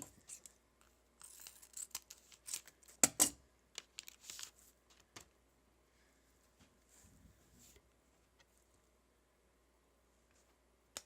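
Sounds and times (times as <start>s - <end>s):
wrapper rustling: 3.8s - 5.1s.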